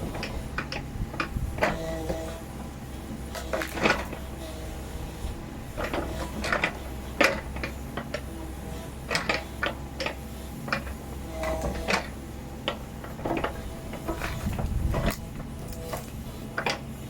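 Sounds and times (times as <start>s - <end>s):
diesel engine running: 0.0s - 17.0s
sharp clicks and knocks: 5.8s - 8.3s, 9.1s - 16.8s.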